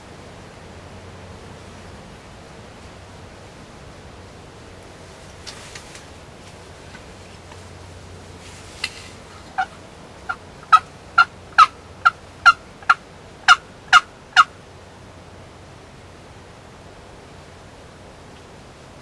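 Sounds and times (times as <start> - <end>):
turkey yelps: 9.5 - 14.5.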